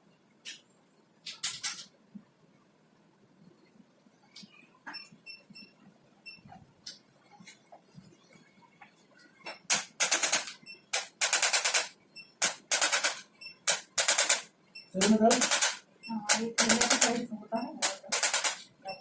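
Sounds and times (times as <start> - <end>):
rapid mechanical clicking: 9.7 - 18.6.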